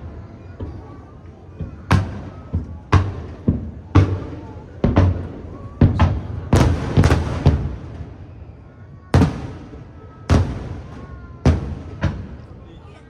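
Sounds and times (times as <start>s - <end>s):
firework shells booming: 0.0s - 8.4s, 9.1s - 12.6s.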